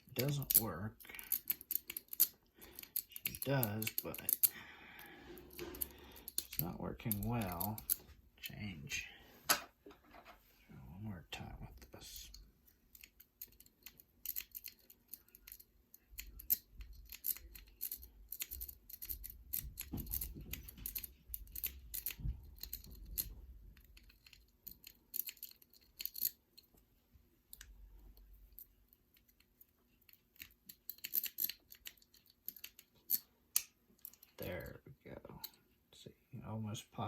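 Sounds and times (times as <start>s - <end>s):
lock pick clicking and scraping: 0.0s - 4.5s, 5.4s - 8.0s, 12.3s - 26.8s, 27.5s - 34.4s.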